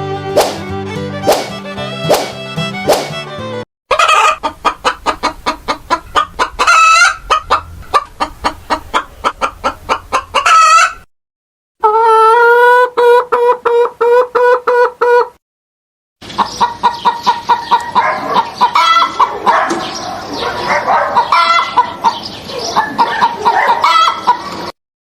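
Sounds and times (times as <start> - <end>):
chicken clucking: 3.9 - 11.1, 11.8 - 15.4, 16.2 - 24.8.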